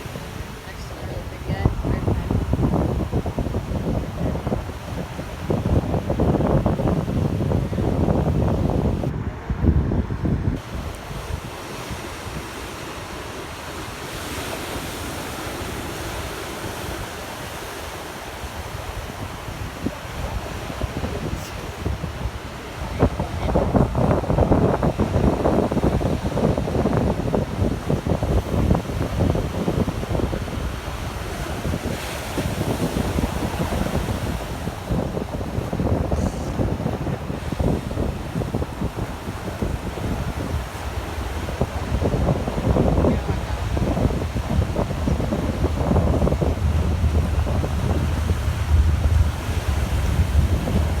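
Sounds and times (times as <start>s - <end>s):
ocean surf washing ashore: 0.0s - 51.0s
wind buffeting microphone: 0.0s - 51.0s.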